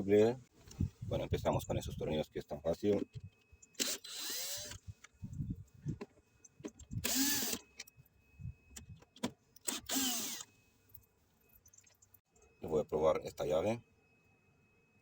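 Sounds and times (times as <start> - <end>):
cordless drill driver whirring: 3.8 - 4.8, 7.0 - 7.7, 9.6 - 10.5.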